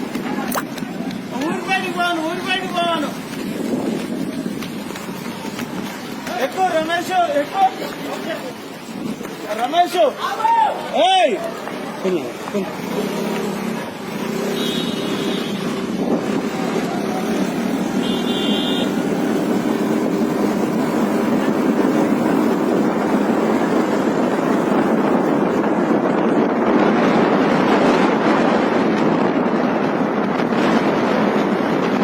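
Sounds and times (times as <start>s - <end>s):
tractor engine running hard: 12.4s - 32.0s.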